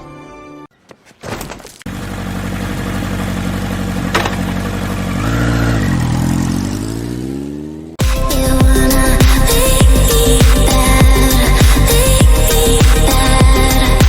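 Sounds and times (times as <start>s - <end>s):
vehicle engine revving: 1.9s - 14.0s.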